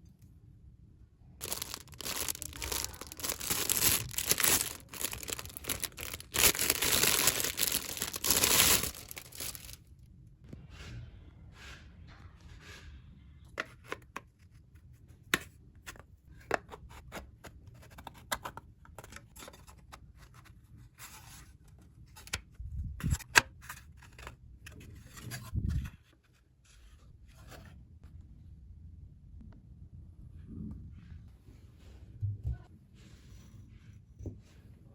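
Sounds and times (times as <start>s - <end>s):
packaging scraping and rustling: 1.4s - 9.8s.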